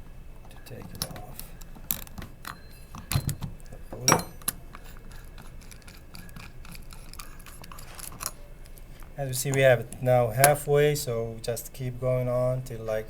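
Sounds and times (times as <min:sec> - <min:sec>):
hand tools clinking: 0:00.3 - 0:10.7
metallic clank ringing: 0:00.5 - 0:08.7.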